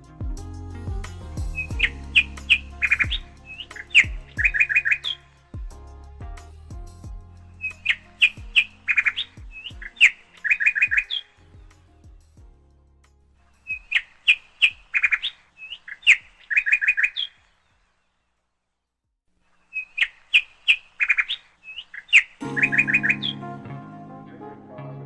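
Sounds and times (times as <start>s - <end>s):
music: 0.0s - 14.0s, 22.4s - 25.0s.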